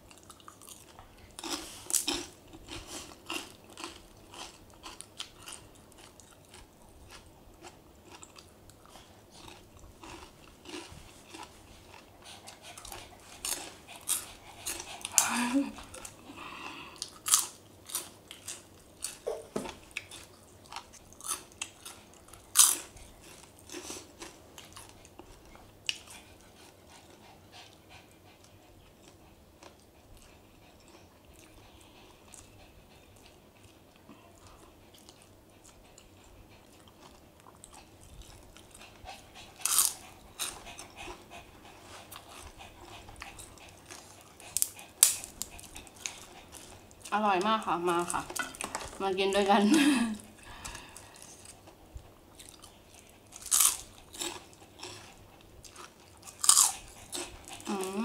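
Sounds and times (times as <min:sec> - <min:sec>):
crunching bites of crisp food: 0:00.2 - 0:08.5, 0:53.3 - 0:57.3.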